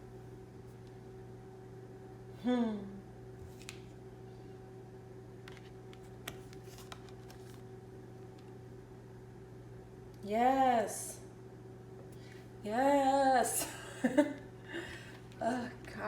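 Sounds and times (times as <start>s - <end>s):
low electrical hum: 0.0s - 16.0s
wordless vocal hum: 2.4s - 3.1s
cards clicking and rustling: 5.5s - 7.6s.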